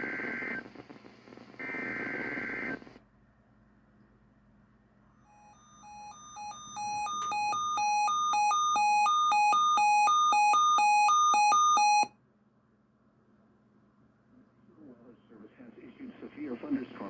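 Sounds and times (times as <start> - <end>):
alarm beeps alternating pitch: 5.3 - 12.1.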